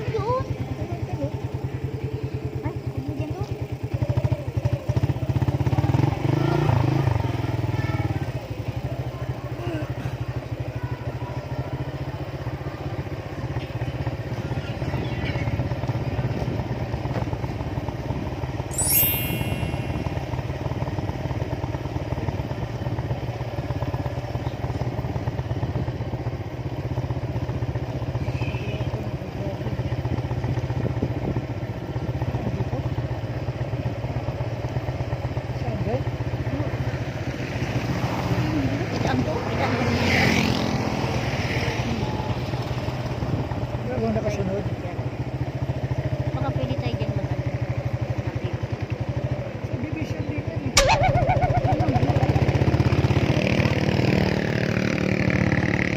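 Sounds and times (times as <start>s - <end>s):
motorcycle engine running: 0.0s - 55.9s.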